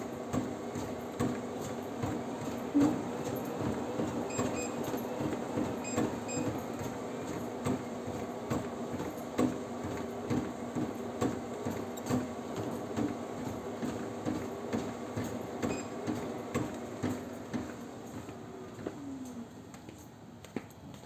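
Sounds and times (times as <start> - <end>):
treadmill knocking: 0.0 - 19.0
treadmill motor and belt hum: 0.0 - 21.0.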